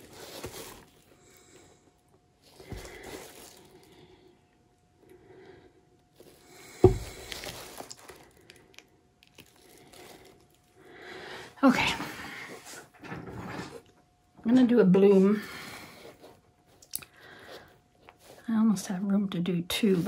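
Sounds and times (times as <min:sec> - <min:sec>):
soft squishing and scraping: 0:00.0 - 0:01.6, 0:02.4 - 0:04.3, 0:06.1 - 0:10.8, 0:15.0 - 0:19.0.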